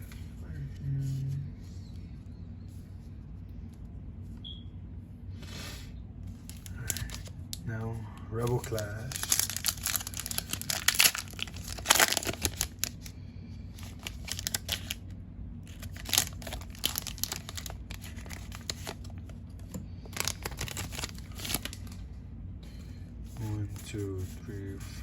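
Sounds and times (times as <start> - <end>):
foil wrapper tearing and crinkling: 6.4 - 7.6, 8.5 - 13.1, 13.8 - 15.0, 15.7 - 19.2, 20.1 - 22.0.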